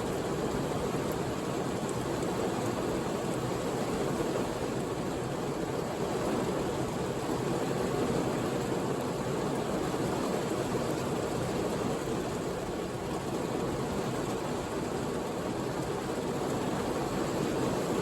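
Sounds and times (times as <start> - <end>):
heavy rain on a car: 0.0 - 18.0.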